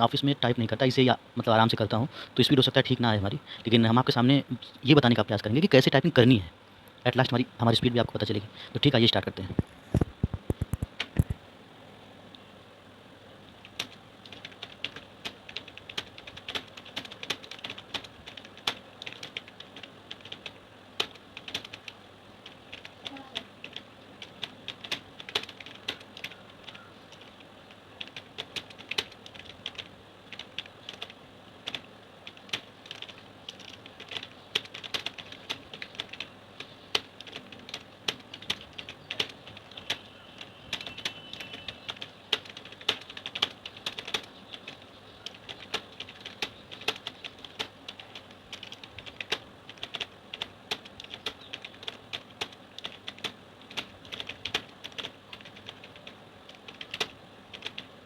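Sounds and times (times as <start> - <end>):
keyboard typing: 9.4 - 11.4, 13.6 - 57.9.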